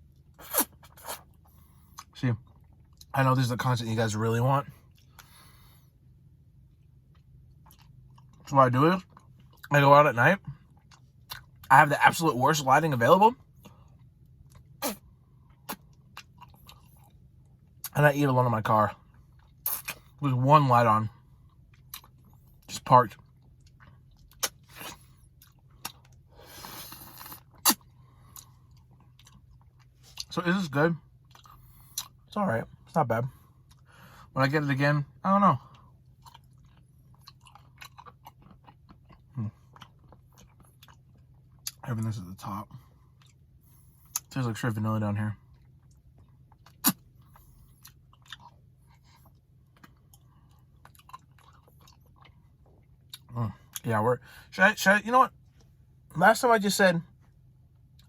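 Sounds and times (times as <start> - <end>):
person chewing and crunching: 0.0 - 3.2, 6.6 - 9.7, 10.4 - 11.7, 13.4 - 18.0, 18.9 - 20.2, 21.1 - 30.3, 31.0 - 32.4, 33.3 - 34.0, 35.6 - 41.8, 42.7 - 44.3, 45.4 - 53.9.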